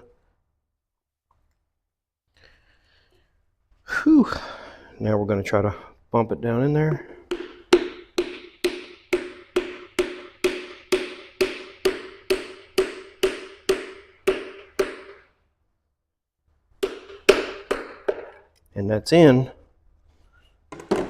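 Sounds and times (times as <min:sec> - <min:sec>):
mallet tapping on metal: 0:07.3 - 0:15.2.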